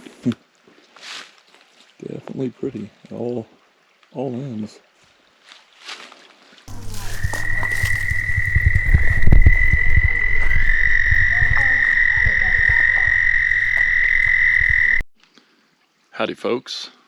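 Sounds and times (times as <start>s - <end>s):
toad trilling: 6.7s - 15.0s.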